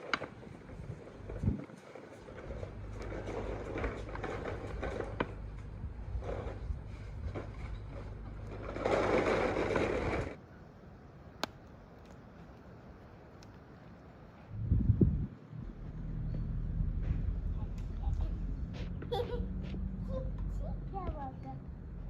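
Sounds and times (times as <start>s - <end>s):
rattling and scraping: 0.0s - 10.4s.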